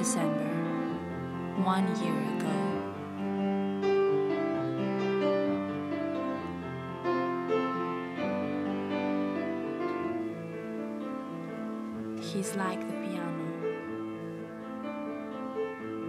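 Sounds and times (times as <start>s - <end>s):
slow piano music: 0.0s - 16.0s.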